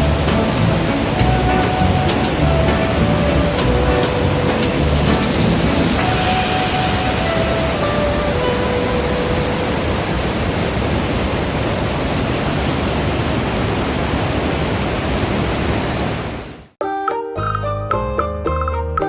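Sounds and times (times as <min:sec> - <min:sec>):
music: 0:00.0 - 0:09.6, 0:16.8 - 0:19.0
waterfall rushing: 0:00.0 - 0:16.7.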